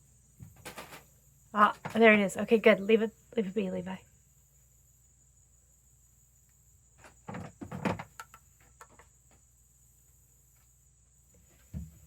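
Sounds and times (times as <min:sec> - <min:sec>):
knocks and bumps: 0:07.0 - 0:09.0, 0:11.6 - 0:12.0.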